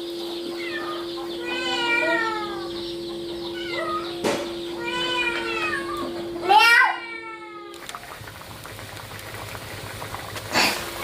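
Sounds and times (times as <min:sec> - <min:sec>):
steady hum: 0:00.0 - 0:11.0
cat meowing: 0:00.6 - 0:02.6, 0:03.5 - 0:04.2, 0:04.8 - 0:07.8.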